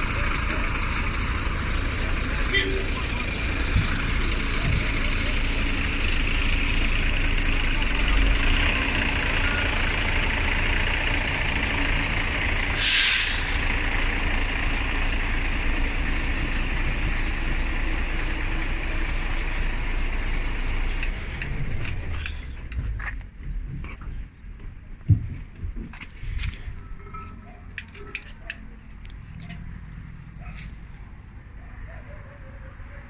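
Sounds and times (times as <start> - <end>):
bus diesel engine running: 0.0 - 33.0
air brake hiss: 12.7 - 13.8.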